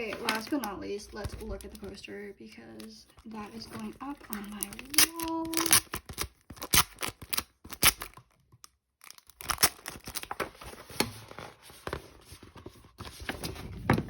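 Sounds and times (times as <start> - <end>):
paper crinkling and tearing: 2.7 - 8.3, 9.0 - 13.8.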